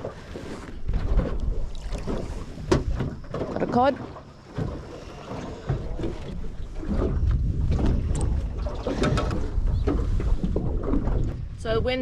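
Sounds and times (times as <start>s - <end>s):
wind buffeting microphone: 4.6s - 12.0s.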